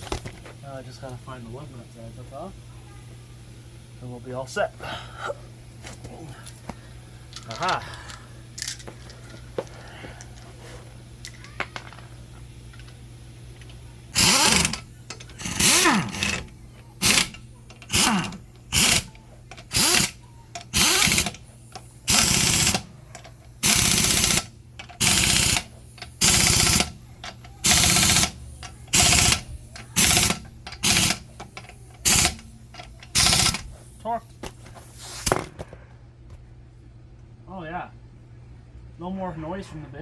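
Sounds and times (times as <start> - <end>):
impact wrench bursts: 13.6 - 35.6.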